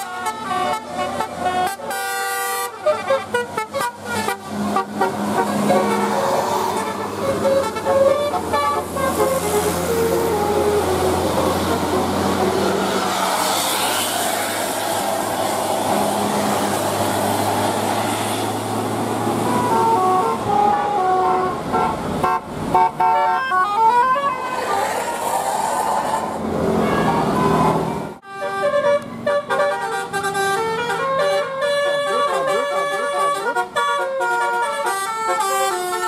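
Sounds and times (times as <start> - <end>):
musical bus horn tunes: 0.0 - 14.0, 19.2 - 24.9, 26.8 - 36.0
bus engine running: 0.0 - 36.0.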